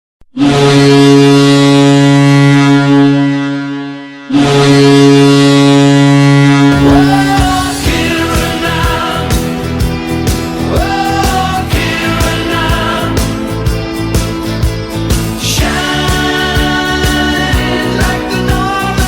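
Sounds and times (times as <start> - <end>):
goal horn blasts: 0.4 - 8.7
music: 6.7 - 19.0.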